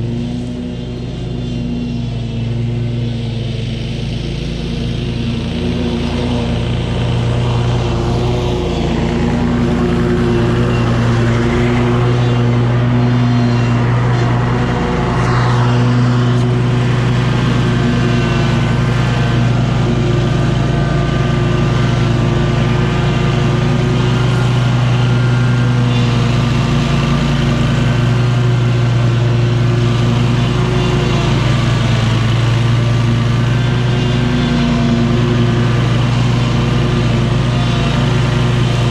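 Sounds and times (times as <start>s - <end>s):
mower engine running: 0.0s - 38.9s.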